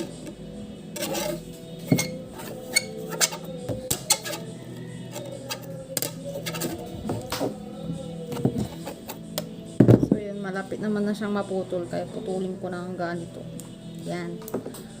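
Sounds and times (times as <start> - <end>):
knife scraping cable wire: 0.9 - 7.4, 8.3 - 9.5.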